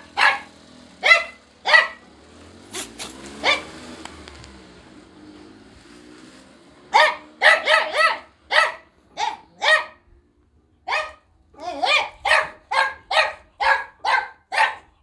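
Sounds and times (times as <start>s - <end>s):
dog barking: 0.0s - 3.8s, 6.9s - 15.0s.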